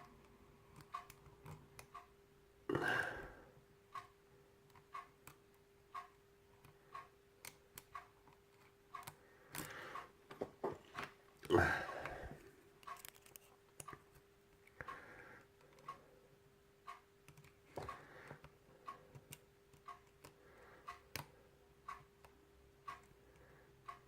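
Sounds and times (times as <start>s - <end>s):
faint ticking: 0.0s - 24.0s
lock-picking tools scraping and clicking: 12.8s - 14.0s.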